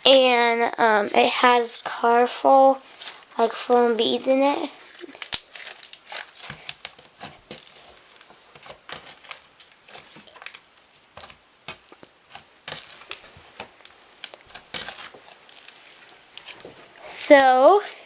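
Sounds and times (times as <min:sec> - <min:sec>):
foam bead slime crunching: 0:00.1 - 0:18.0.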